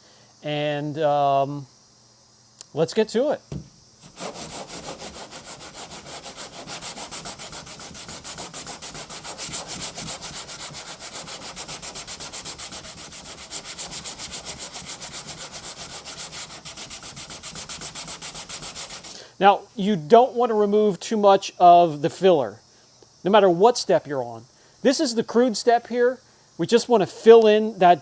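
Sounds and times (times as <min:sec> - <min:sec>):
sandpaper sanding strokes: 0:04.0 - 0:19.2.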